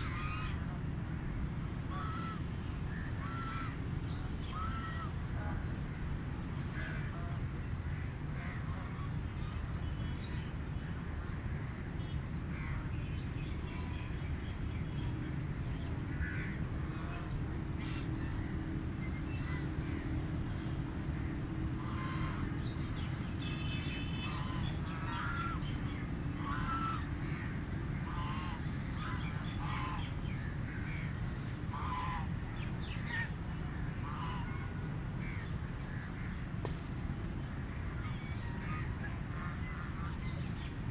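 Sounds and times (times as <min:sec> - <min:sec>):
ducks quacking: 0:16.1 - 0:36.4.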